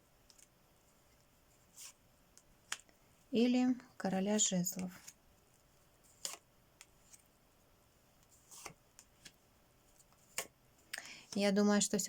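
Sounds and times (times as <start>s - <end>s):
cards clicking and rustling: 8.2s - 9.4s, 10.0s - 10.5s.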